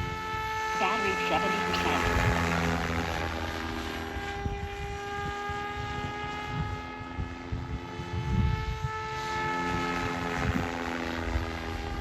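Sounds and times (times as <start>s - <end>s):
rc helicopter rotor and motor whine: 2.0s - 12.0s.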